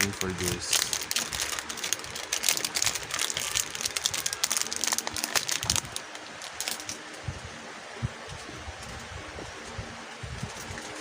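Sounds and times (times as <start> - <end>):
plastic wrap crinkling: 0.0 - 7.0.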